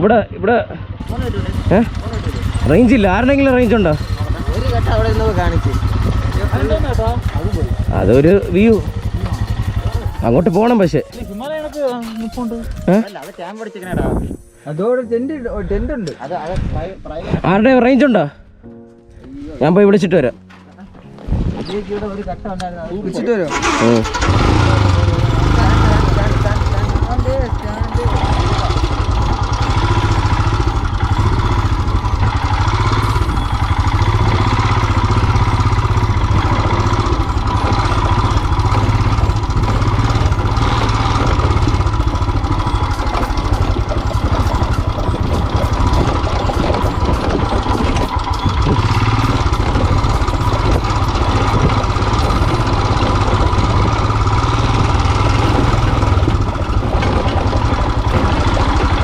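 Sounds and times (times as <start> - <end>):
motorcycle engine running steadily: 0.0 - 13.1, 23.5 - 59.0.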